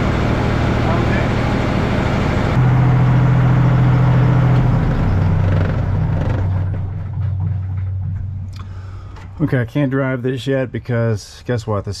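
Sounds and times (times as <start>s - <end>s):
skid steer engine running: 0.0s - 9.2s.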